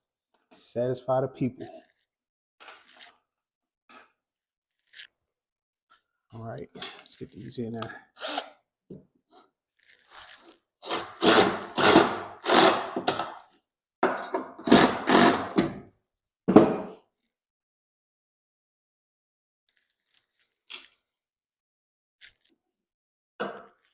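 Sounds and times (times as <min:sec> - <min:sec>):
power drill driving screws: 0:08.2 - 0:08.6, 0:10.1 - 0:13.2, 0:14.6 - 0:15.8.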